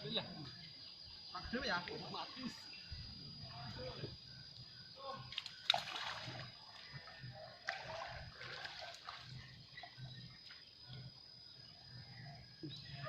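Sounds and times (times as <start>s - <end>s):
water splashing: 5.3s - 6.6s, 7.6s - 9.9s.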